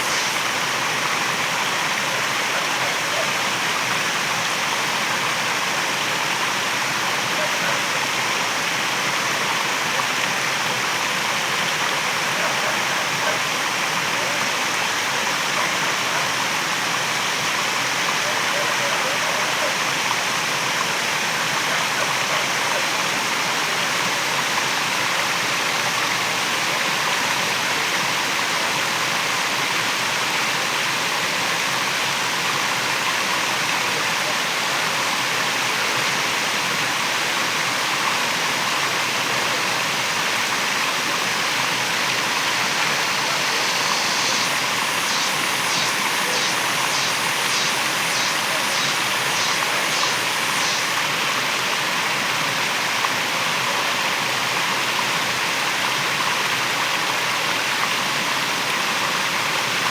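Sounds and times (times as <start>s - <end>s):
waterfall roaring: 40.1s - 58.7s
faint high pulsing call: 42.2s - 51.2s.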